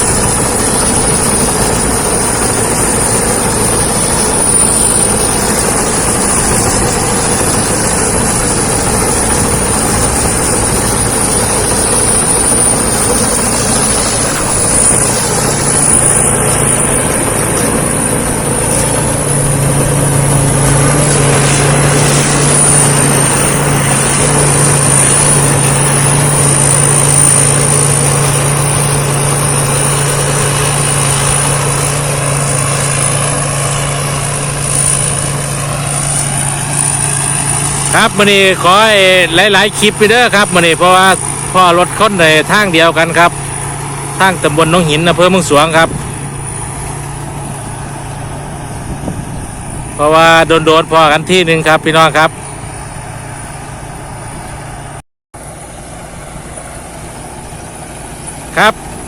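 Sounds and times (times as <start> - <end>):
combine harvester running: 0.0 - 59.0
high thin whine: 0.0 - 59.0.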